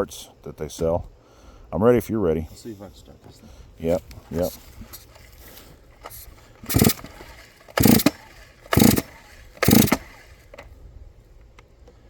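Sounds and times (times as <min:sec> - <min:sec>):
chainsaw engine turning over: 0:05.0 - 0:10.8
chainsaw starter cord rips: 0:06.0 - 0:10.7.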